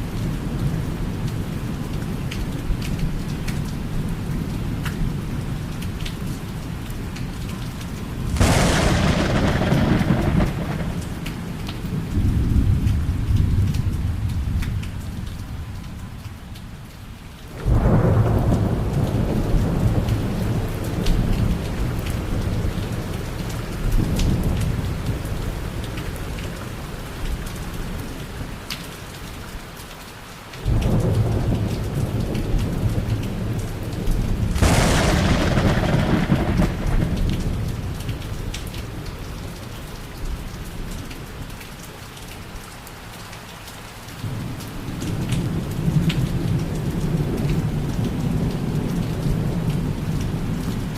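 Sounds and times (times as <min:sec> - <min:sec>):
falling rain: 0:00.0 - 0:50.9
thunder claps rumbling: 0:08.3 - 0:15.2, 0:17.5 - 0:23.0, 0:30.6 - 0:39.0.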